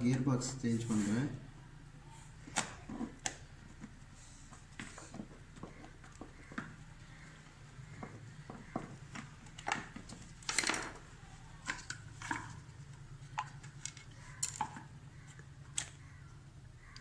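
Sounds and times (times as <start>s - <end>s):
low steady hum: 0.0s - 17.0s
metal tools clicking and clinking: 13.8s - 14.9s.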